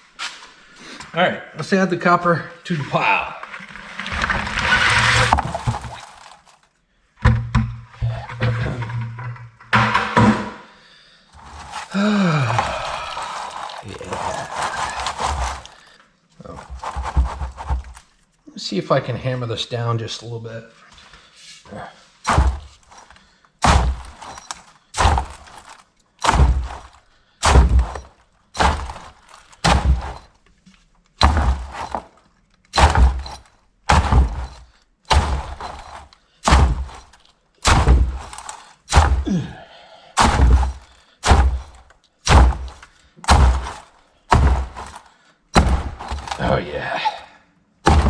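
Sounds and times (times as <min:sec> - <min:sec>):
hammer thunking on wire: 0:22.3 - 0:30.4, 0:31.2 - 0:39.5, 0:40.2 - 0:46.4.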